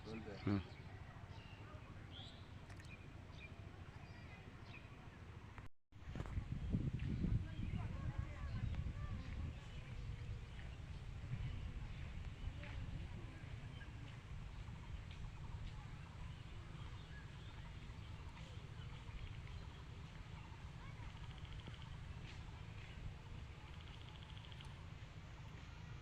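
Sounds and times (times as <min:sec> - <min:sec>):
steady low rumble: 0:05.4 - 0:26.0.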